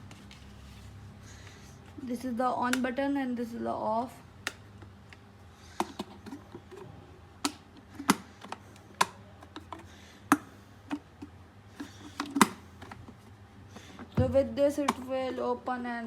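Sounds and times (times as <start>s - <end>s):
kettle switch plastic clicks: 7.4s - 11.3s, 14.8s - 15.0s.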